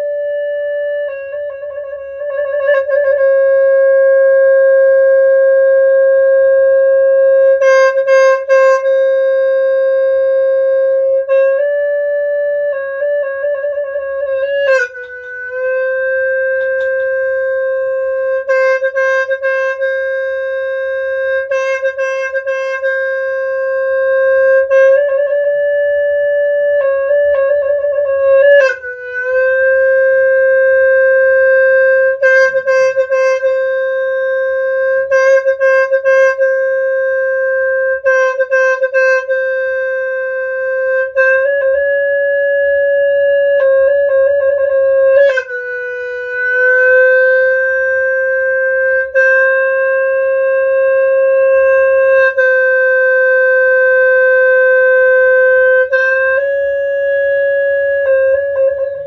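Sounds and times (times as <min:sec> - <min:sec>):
horn playing long held notes: 0:14.7 - 0:25.2, 0:28.6 - 0:43.7, 0:45.2 - 0:59.0.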